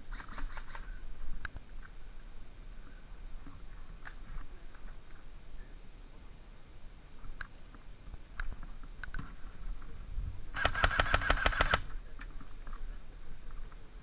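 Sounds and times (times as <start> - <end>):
airsoft gun firing burst: 10.6 - 11.9.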